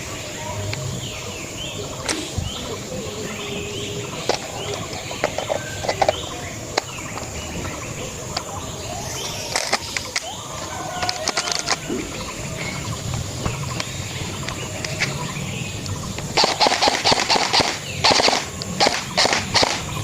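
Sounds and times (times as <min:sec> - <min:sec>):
birds chirping: 0:00.0 - 0:20.0
steady outdoor hiss: 0:00.0 - 0:20.0
sharp clicks: 0:09.2 - 0:12.0, 0:13.4 - 0:20.0.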